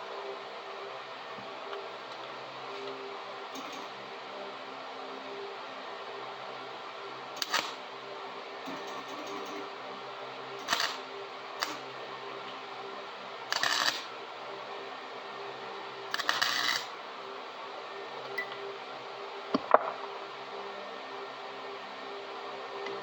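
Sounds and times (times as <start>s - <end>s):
steady low hum: 0.0s - 23.0s
welder arc crackling: 7.4s - 7.8s, 10.6s - 11.9s, 13.5s - 14.1s, 16.1s - 17.0s.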